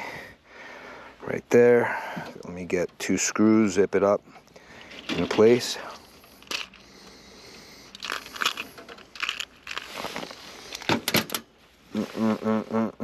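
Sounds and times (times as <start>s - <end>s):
small screws clicking and rattling: 4.8s - 6.9s, 7.9s - 11.4s.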